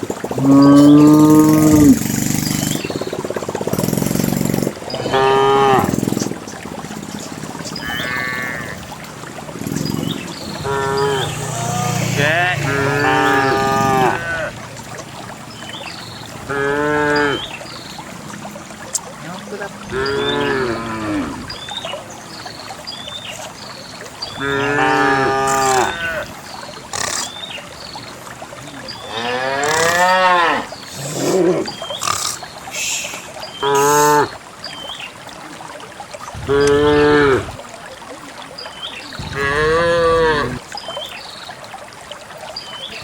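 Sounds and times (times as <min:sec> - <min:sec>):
cows mooing: 0:00.4 - 0:02.0, 0:04.9 - 0:06.0, 0:07.8 - 0:08.9, 0:10.6 - 0:14.6, 0:16.4 - 0:17.5, 0:19.8 - 0:21.5, 0:24.4 - 0:26.3, 0:29.1 - 0:32.4, 0:33.6 - 0:34.3, 0:36.4 - 0:37.6, 0:39.2 - 0:40.6.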